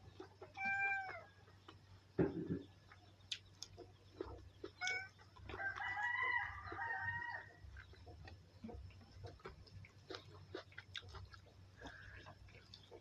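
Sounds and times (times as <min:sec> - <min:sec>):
rooster crowing: 0:05.5 - 0:07.6.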